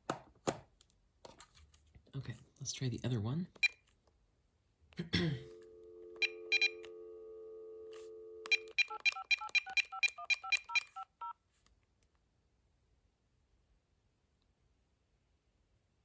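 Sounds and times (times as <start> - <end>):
dial tone: 5.5 - 11.1
touch-tone digits: 5.6 - 7.1, 8.0 - 11.3
phone key beeps: 6.2 - 7.0, 8.0 - 11.4.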